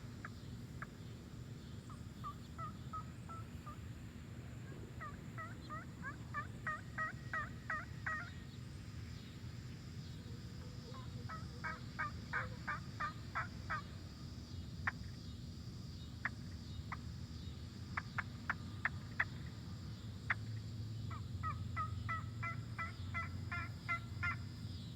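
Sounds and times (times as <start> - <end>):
turkey call clucks: 1.8 - 3.8, 5.0 - 8.5, 10.6 - 13.9, 18.0 - 19.5, 21.1 - 24.5
turkey call yelps: 1.9 - 3.8, 5.0 - 8.5, 10.6 - 13.9, 21.1 - 24.4.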